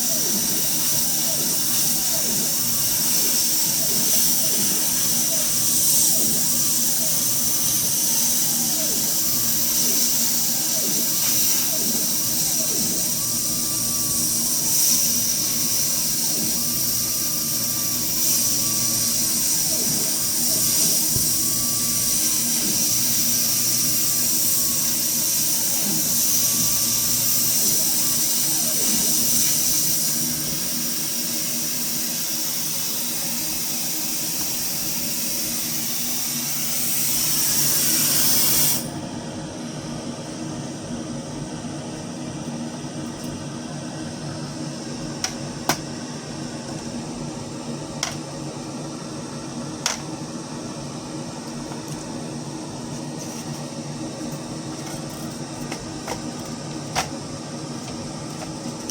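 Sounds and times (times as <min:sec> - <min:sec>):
stepper motors whining: 0:00.0 - 0:39.1
blower hissing: 0:00.0 - 0:58.9.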